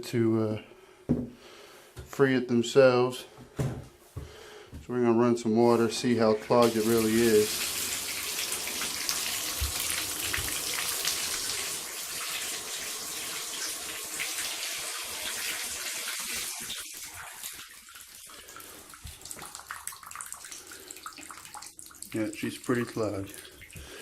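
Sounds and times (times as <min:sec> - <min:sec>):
faucet running water into tub: 0:06.0 - 0:24.0.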